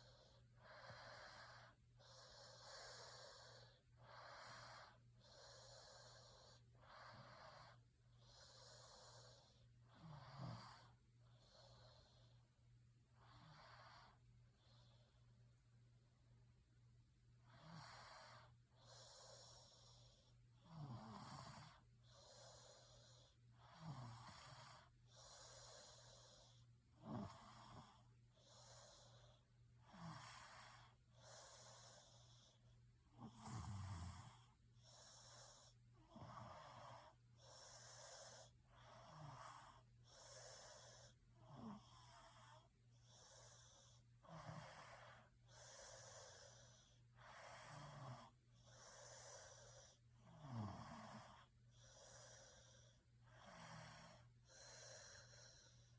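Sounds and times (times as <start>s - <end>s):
person snoring: 17.4s - 55.9s.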